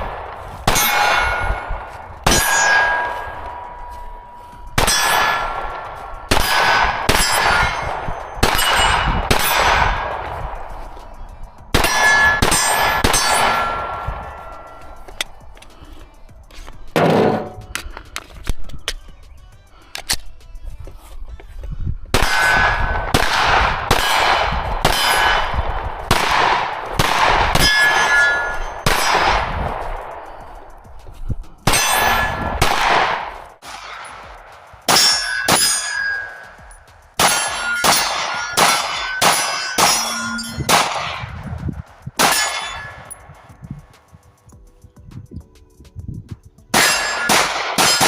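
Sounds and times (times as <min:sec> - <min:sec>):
pistol shots: 0:00.0 - 0:04.0, 0:04.8 - 0:10.8, 0:11.7 - 0:15.3, 0:22.1 - 0:30.7, 0:31.6 - 0:36.6, 0:37.2 - 0:41.4, 0:42.2 - 0:43.2, 0:46.7 - 0:48.0
steel target clanging: 0:00.7 - 0:09.7, 0:11.8 - 0:15.1, 0:24.9 - 0:25.6, 0:27.6 - 0:29.4, 0:31.7 - 0:32.6, 0:33.6 - 0:41.2, 0:42.2 - 0:43.2, 0:46.8 - 0:48.0.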